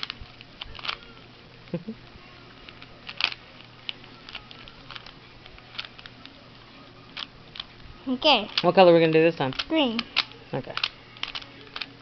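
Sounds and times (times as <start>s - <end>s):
puzzle cube clicking: 0.0s - 1.0s, 2.7s - 6.4s, 8.4s - 11.9s.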